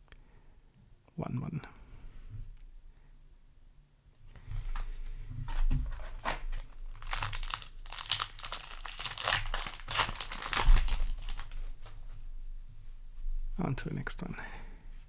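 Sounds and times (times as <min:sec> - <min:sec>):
foil wrapper crinkling: 0:04.4 - 0:12.2.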